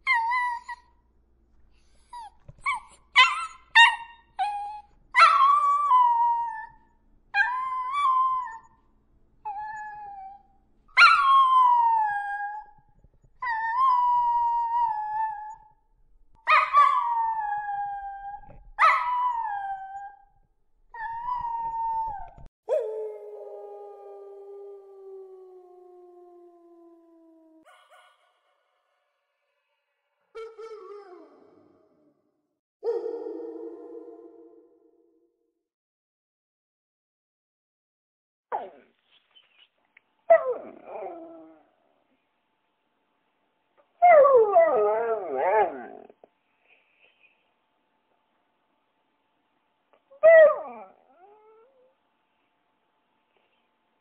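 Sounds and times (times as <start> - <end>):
dog yips: 0.0 - 0.8, 2.0 - 6.8, 11.0 - 12.4, 16.5 - 17.4, 18.4 - 19.4
dogs howling: 44.0 - 46.2.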